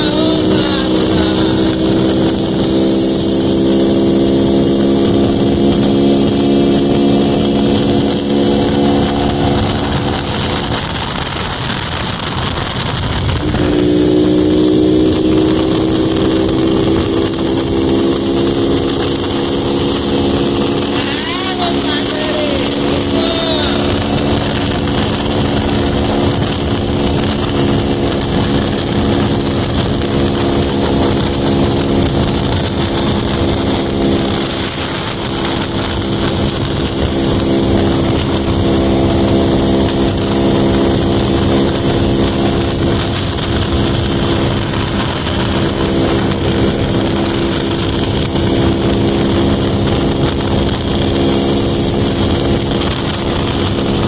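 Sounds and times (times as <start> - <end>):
motorcycle engine running: 0.0 - 54.0
wind on microphone: 0.0 - 54.0.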